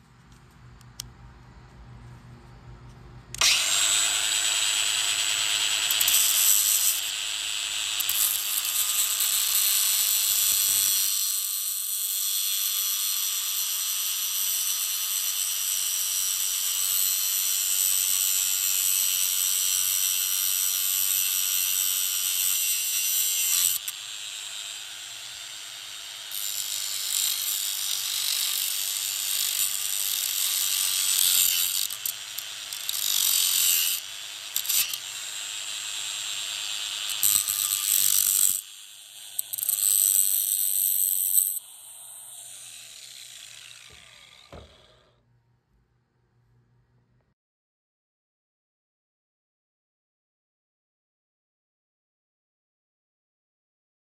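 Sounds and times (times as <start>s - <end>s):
angle grinder cutting metal: 3.3s - 45.2s.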